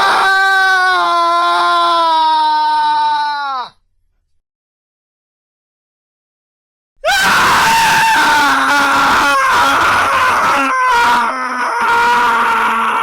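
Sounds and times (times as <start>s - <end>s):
man screaming: 7.0s - 13.0s.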